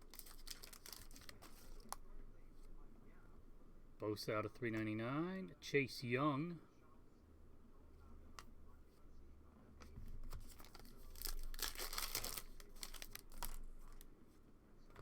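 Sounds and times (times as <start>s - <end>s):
foil wrapper tearing and crinkling: 0.0s - 1.9s, 10.5s - 13.6s.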